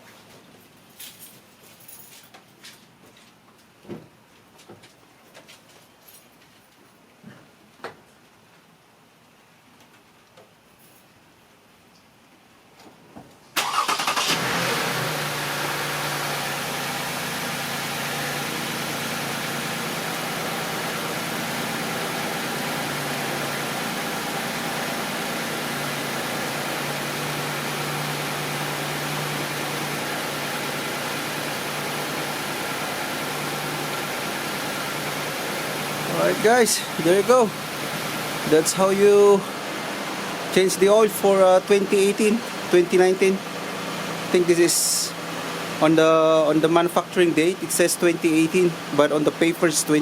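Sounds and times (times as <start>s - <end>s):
car engine starting and idling: 13.6s - 50.0s.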